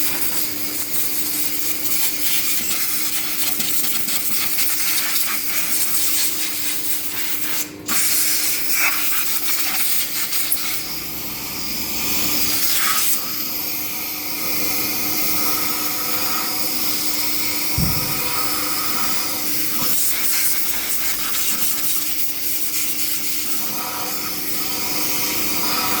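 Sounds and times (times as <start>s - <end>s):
high-pressure jet spraying: 17.8s - 26.0s.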